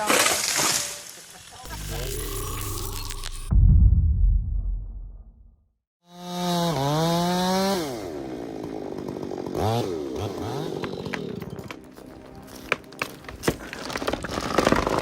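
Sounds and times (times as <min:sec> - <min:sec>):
chainsaw running: 0:06.1 - 0:11.8.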